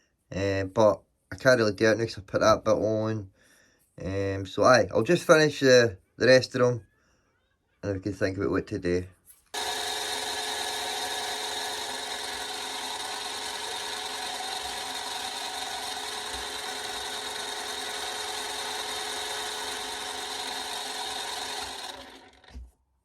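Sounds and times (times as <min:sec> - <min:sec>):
lathe scraping metal: 0:09.6 - 0:22.6
lathe motor whine: 0:09.6 - 0:22.7.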